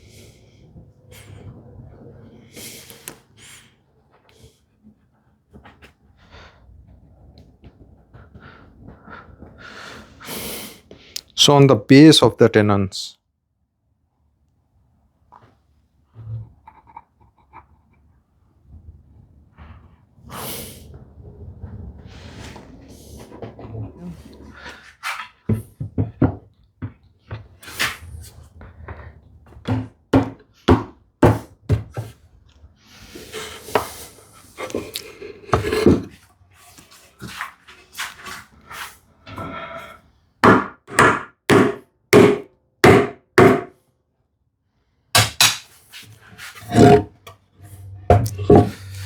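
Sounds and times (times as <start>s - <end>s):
sharp knocks on wood: 40.4s - 43.7s.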